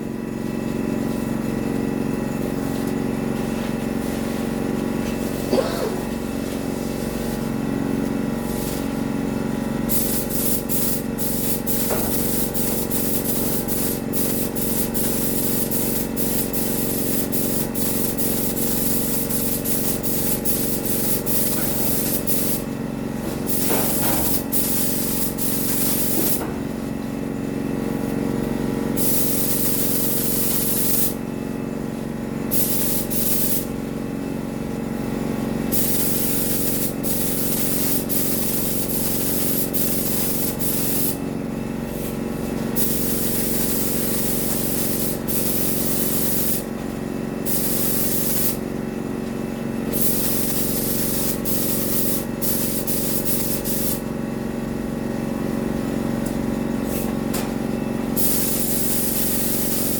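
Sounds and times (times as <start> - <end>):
paint spray gun hissing: 9.9 - 26.4, 29.0 - 31.2, 32.5 - 33.7, 35.7 - 41.2, 42.8 - 46.7, 47.4 - 48.6, 49.9 - 54.0, 56.8 - 57.1, 58.1 - 59.9.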